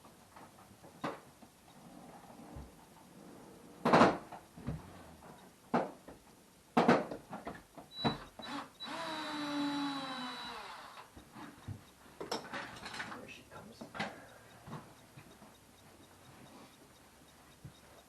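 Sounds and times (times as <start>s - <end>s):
sharp knocks and clatters: 5.7s - 8.2s
power drill running down: 8.0s - 11.1s.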